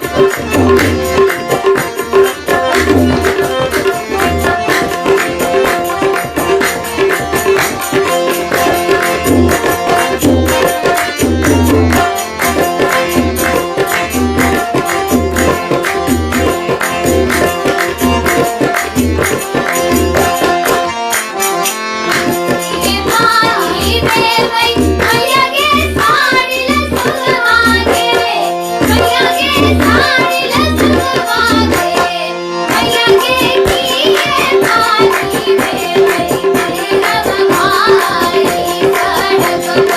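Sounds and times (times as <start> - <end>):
folk song music: 0.0 - 39.9
tabla rhythm: 0.0 - 39.9
person singing: 22.8 - 39.9.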